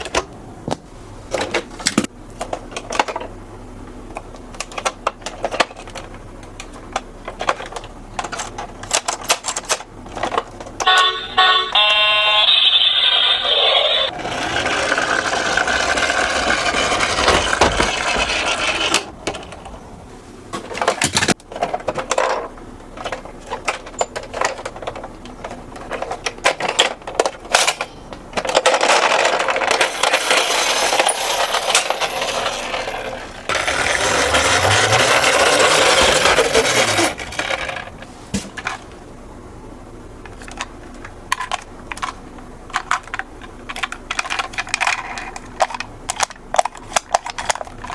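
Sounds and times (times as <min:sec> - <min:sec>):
small metal cars clattering: 0:07.3 - 0:19.7, 0:20.6 - 0:38.9
toy cars rolling on track: 0:07.4 - 0:19.6, 0:21.6 - 0:38.8, 0:41.3 - 0:47.9.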